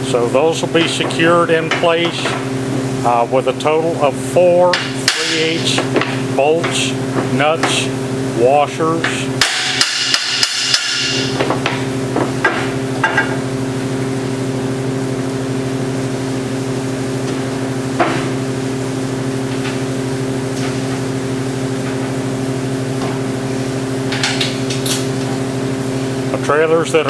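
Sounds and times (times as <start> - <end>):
hammer striking steel: 4.7 - 5.7, 9.4 - 11.4.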